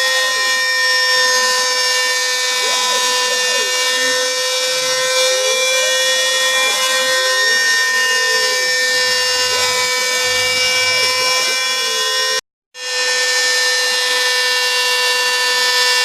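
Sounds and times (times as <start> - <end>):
drive motors rising and falling: 0.0 - 12.4
router spindle whine: 0.0 - 16.0.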